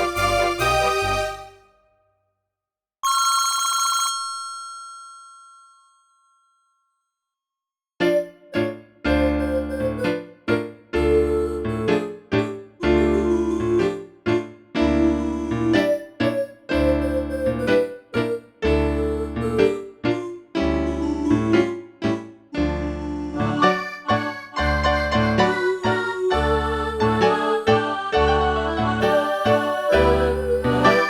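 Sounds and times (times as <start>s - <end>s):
phone ringtone synth tune: 3.0s - 6.0s.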